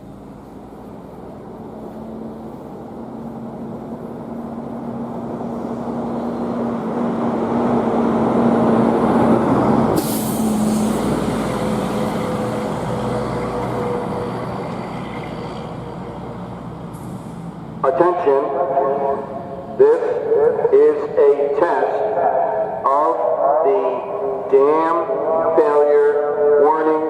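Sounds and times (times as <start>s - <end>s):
heavy vehicle engine running: 0.0s - 26.7s
sharp hiss of air: 10.0s - 11.5s.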